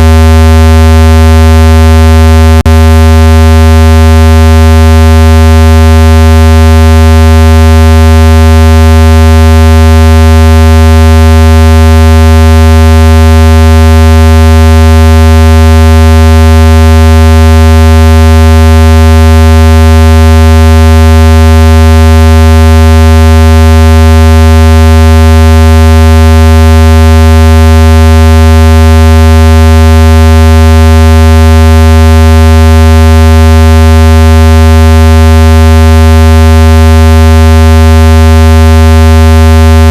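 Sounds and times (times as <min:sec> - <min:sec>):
low buzzing tone: 0:00.0 - 0:15.1.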